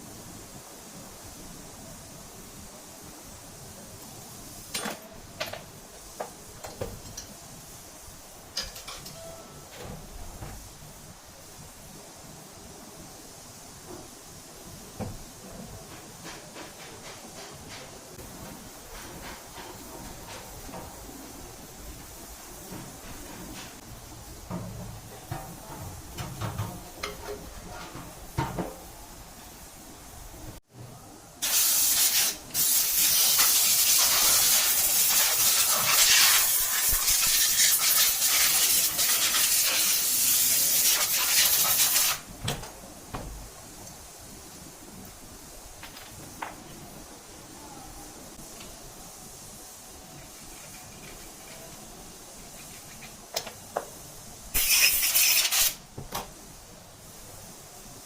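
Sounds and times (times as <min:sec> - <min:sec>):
low background noise: 0:00.0 - 0:58.0
steady hiss: 0:00.0 - 0:58.0
tools knocking and clinking: 0:04.7 - 0:07.4.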